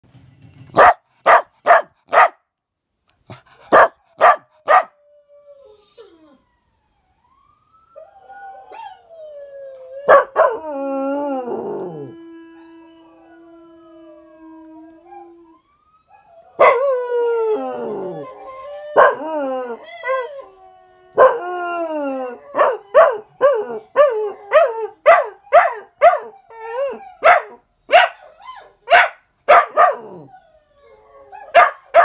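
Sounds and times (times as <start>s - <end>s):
dog barking: 0.8s - 2.4s, 3.3s - 5.0s, 25.0s - 26.3s, 27.2s - 28.2s, 28.9s - 30.0s, 31.5s - 32.0s
dogs howling: 8.0s - 15.5s, 16.2s - 32.0s.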